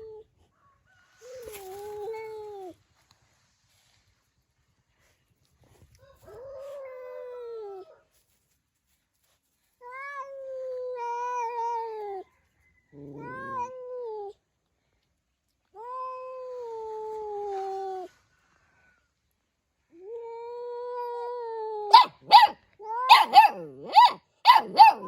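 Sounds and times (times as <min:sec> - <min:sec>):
cat meowing: 0:13.0 - 0:14.2, 0:20.2 - 0:24.0.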